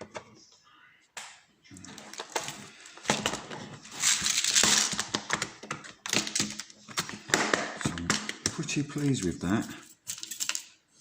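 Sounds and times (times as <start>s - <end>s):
rustling and crinkling handling: 1.9s - 10.7s.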